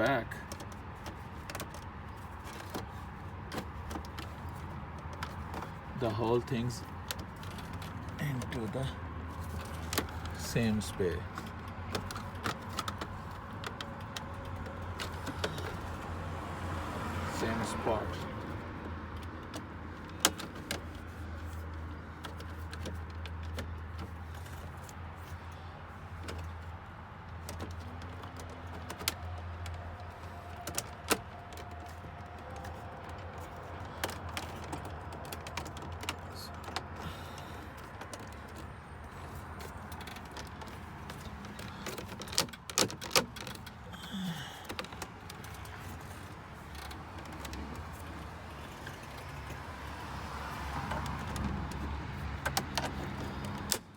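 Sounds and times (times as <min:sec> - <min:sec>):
plastic trim clicks and knocks: 0:27.4 - 0:43.8.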